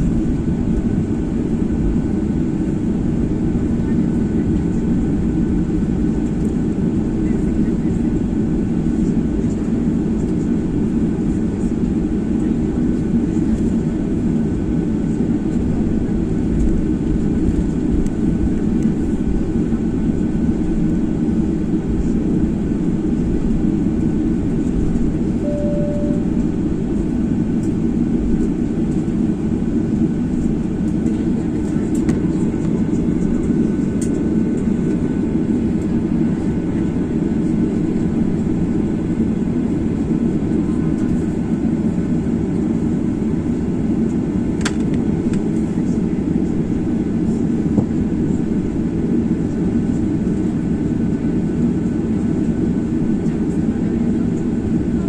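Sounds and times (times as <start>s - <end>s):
jet engine cabin rumble: 0.0s - 55.0s
short single tone: 25.4s - 26.6s.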